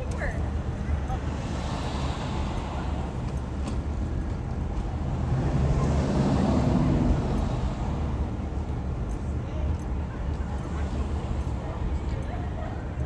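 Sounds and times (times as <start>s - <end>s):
road noise: 0.0s - 13.0s
vehicle engine rumble: 0.0s - 13.0s.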